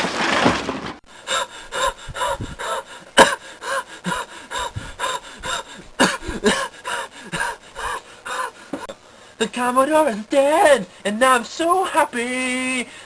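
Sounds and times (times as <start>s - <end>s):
noisy crash: 0.0s - 1.0s
person gasping: 1.1s - 9.4s.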